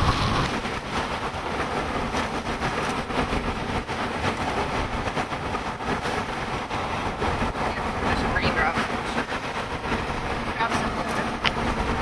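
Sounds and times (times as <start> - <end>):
road and wind noise: 0.0 - 12.0.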